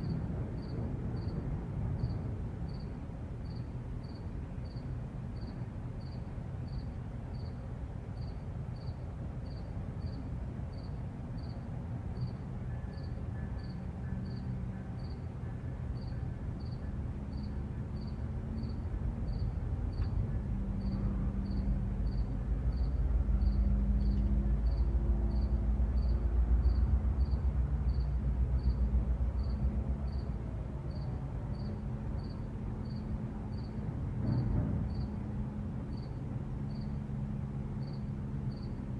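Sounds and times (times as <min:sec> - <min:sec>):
cricket chirping: 0:00.0 - 0:01.4, 0:02.0 - 0:07.6, 0:08.2 - 0:11.6, 0:12.2 - 0:15.2, 0:15.9 - 0:35.1, 0:35.9 - 0:37.0, 0:37.8 - 0:38.8
low traffic rumble: 0:00.0 - 0:38.9
vehicle passing: 0:17.2 - 0:38.9.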